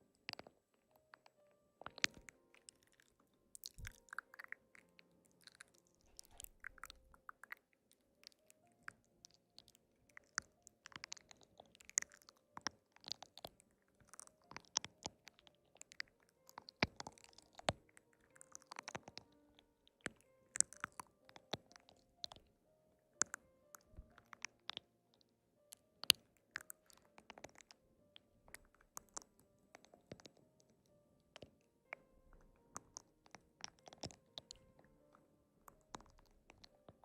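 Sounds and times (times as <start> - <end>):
faint background music: 0.0 - 37.0
person chewing crisp food: 1.8 - 7.6, 8.2 - 22.5, 32.3 - 34.7.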